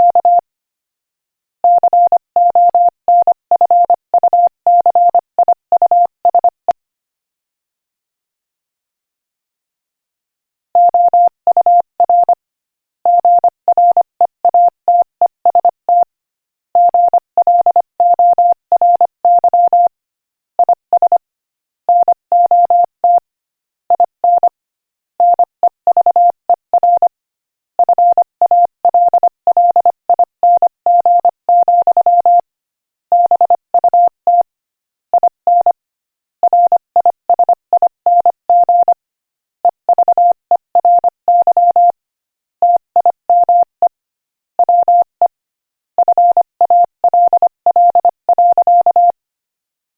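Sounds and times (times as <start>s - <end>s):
morse code beeping: 46.0s - 49.2s.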